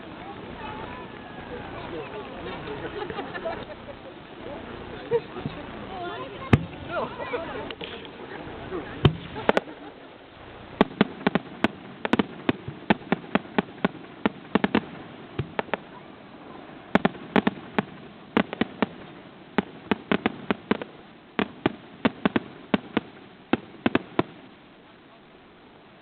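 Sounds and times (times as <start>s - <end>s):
fireworks bangs and pops: 6.4s - 24.7s.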